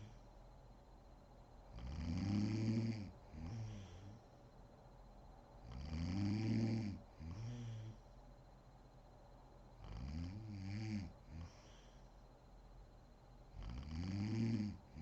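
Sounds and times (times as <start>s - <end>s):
woman snoring: 1.8s - 4.1s, 5.7s - 8.0s, 9.8s - 11.8s, 13.6s - 15.0s.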